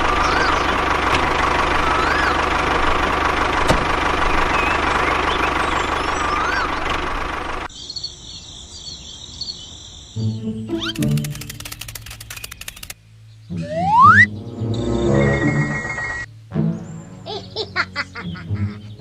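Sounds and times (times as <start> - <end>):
tractor motor humming: 0.0 - 7.7, 10.3 - 16.5
faint high chirping: 0.1 - 0.8, 1.8 - 2.5, 7.7 - 11.5.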